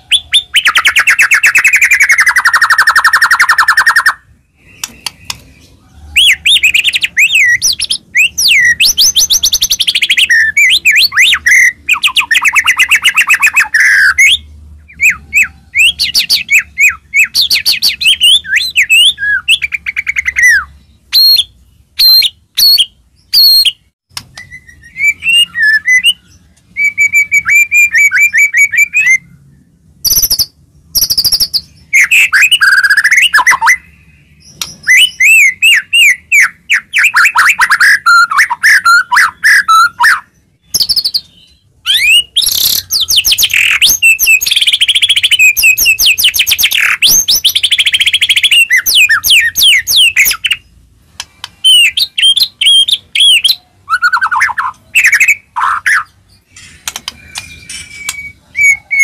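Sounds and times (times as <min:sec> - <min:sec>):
bird singing whistled phrases: 0:00.0 - 0:29.3, 0:30.0 - 0:50.6, 0:51.4 - 0:56.2, 0:57.1 - 0:59.0.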